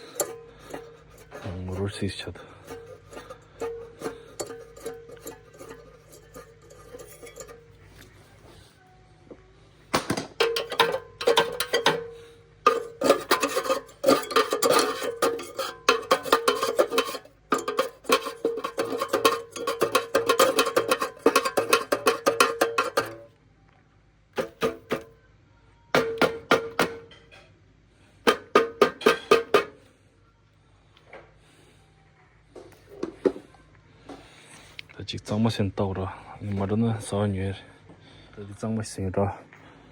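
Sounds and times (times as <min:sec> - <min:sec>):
metal clattering and tapping: 0:00.0 - 0:02.0, 0:02.6 - 0:08.1, 0:10.0 - 0:23.3, 0:24.4 - 0:25.1, 0:26.0 - 0:27.4, 0:28.3 - 0:29.8.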